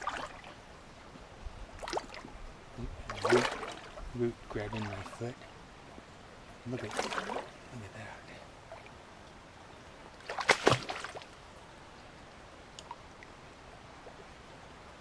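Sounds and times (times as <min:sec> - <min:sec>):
water splashing and sloshing: 0:00.0 - 0:13.4
stream water rushing: 0:00.0 - 0:15.0
water dripping: 0:12.7 - 0:13.4.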